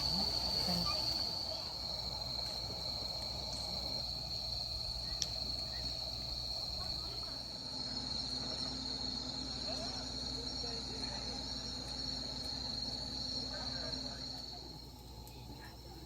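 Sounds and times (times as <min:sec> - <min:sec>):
crickets trilling: 0:00.0 - 0:16.0.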